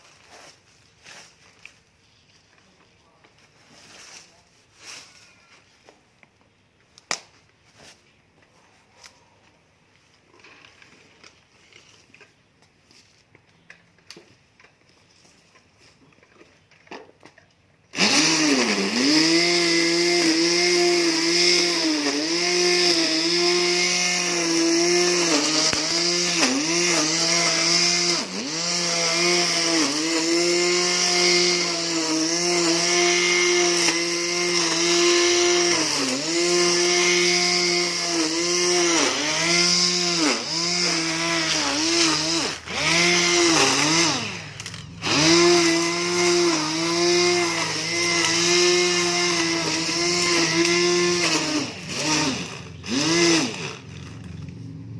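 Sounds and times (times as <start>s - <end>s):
electric grass trimmer whining: 17.9s - 54.7s.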